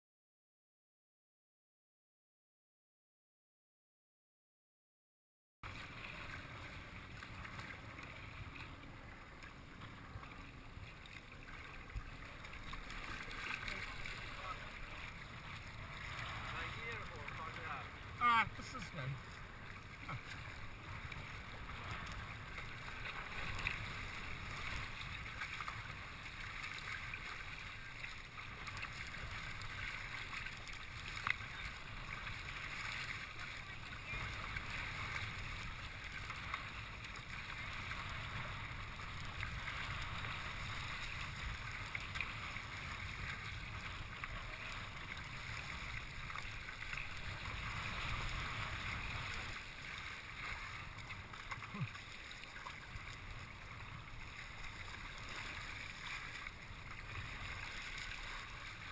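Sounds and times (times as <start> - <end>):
water around a kayak: 5.6 - 58.9
wind rumble on microphone: 28.4 - 49.7.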